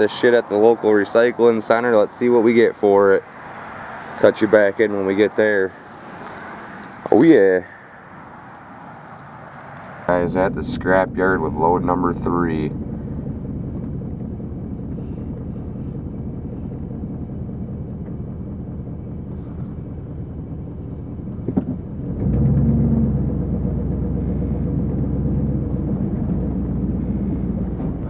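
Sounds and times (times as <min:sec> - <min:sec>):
vehicle engine running: 0:09.2 - 0:28.0.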